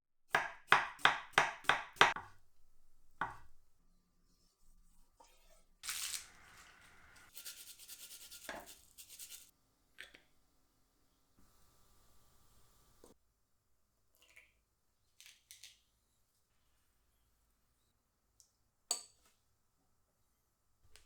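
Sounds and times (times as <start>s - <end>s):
knife chopping on cutting board: 0.3s - 2.4s, 3.2s - 3.5s.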